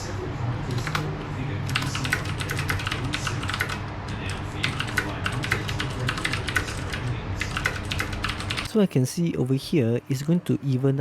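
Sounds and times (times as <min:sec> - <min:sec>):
clicky mechanical keyboard typing: 0:01.7 - 0:08.7.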